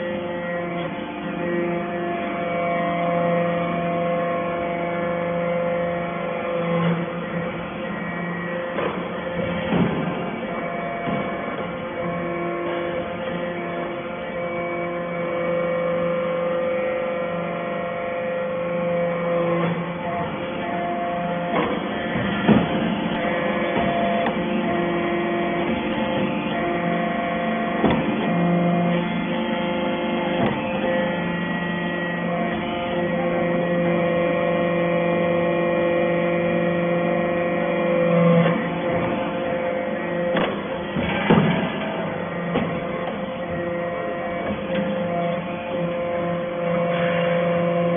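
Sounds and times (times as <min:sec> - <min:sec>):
baling press machine hum: 0:00.0 - 0:47.9
sharp knocks: 0:21.5 - 0:23.1, 0:27.8 - 0:28.3, 0:40.3 - 0:43.2.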